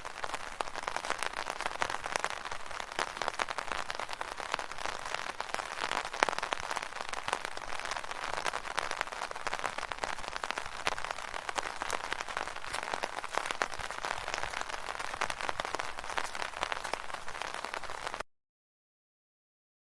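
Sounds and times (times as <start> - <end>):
heavy rain on umbrella: 0.0 - 18.3.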